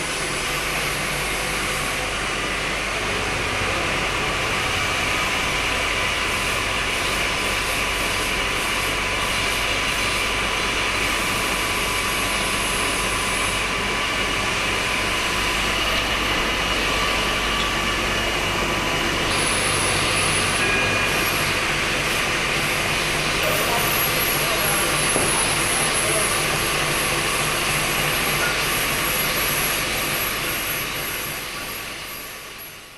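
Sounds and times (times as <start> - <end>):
metal lathe running: 0.0 - 32.9
thin high whine: 14.8 - 27.4.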